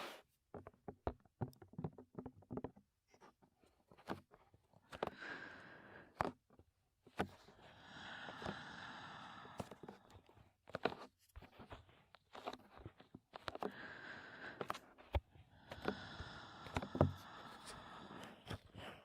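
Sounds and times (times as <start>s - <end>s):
heavy breathing: 5.0s - 6.2s, 7.3s - 10.4s, 13.6s - 19.0s.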